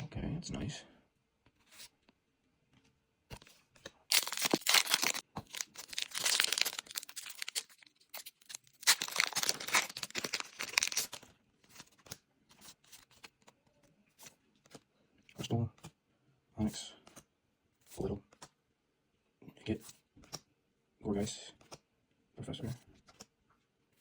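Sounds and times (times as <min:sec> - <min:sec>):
foil wrapper crinkling and tearing: 0:04.1 - 0:11.3.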